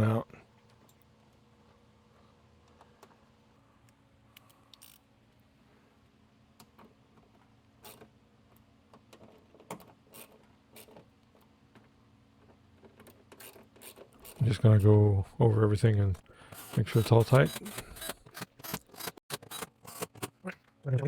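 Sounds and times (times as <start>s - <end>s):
hand tools clicking and scraping: 13.3s - 20.4s.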